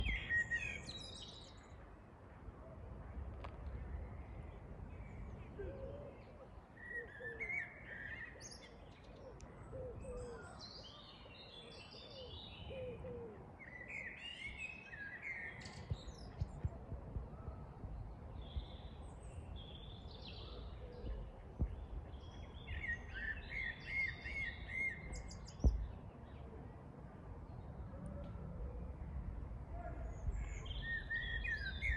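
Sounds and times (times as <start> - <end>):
birds singing and chirping: 0.0 - 1.8, 18.0 - 26.4, 29.7 - 31.9
low repeated bird calls: 4.0 - 26.6, 27.6 - 31.9.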